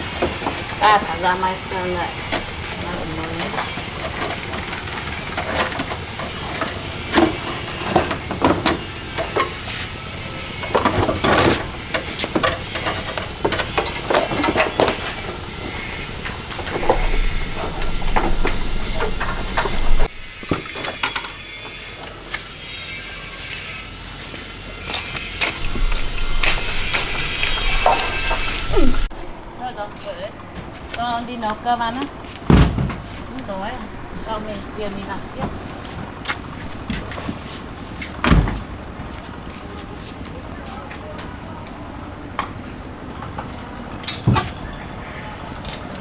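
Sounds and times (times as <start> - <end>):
steady low hum: 0.0 - 21.0, 25.2 - 37.9
knocks and clanks: 0.0 - 22.5, 24.9 - 39.7.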